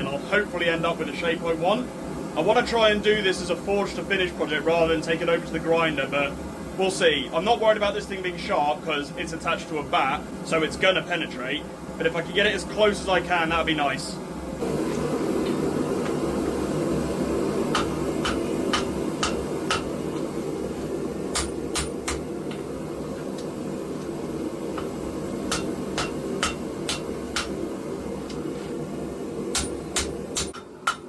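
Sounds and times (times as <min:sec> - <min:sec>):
hammer striking hot steel: 0:17.6 - 0:20.3, 0:21.3 - 0:22.7, 0:24.7 - 0:27.6, 0:29.5 - 0:31.0.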